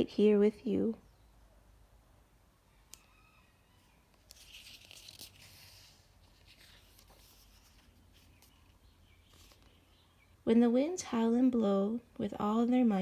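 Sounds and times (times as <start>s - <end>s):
book page turning: 4.1s - 9.8s.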